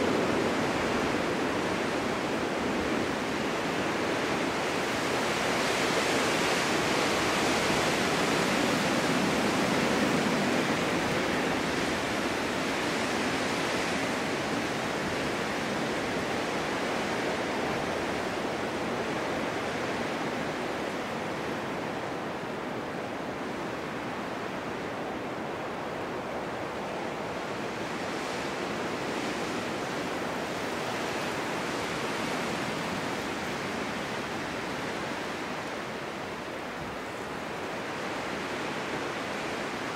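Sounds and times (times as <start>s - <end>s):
snowstorm wind rushing: 0.0s - 39.9s.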